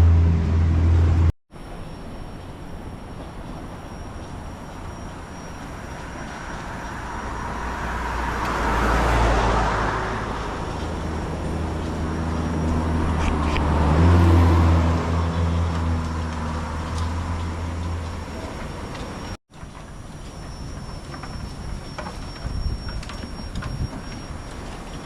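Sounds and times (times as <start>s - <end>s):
heavy vehicle engine passing: 0.0s - 1.3s, 3.1s - 19.4s
vehicle rushing past: 0.0s - 1.3s, 4.8s - 19.4s.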